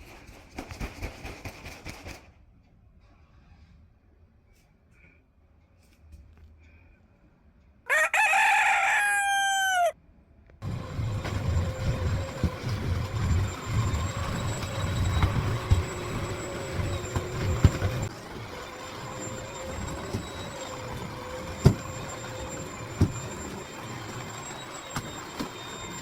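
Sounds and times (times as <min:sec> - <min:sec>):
rooster crowing: 0:07.9 - 0:10.0
vehicle engine rumble: 0:10.6 - 0:26.0.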